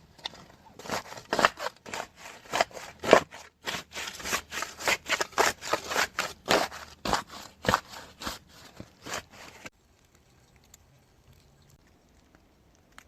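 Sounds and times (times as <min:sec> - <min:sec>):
hand tool scraping damp earth: 0:00.0 - 0:09.7.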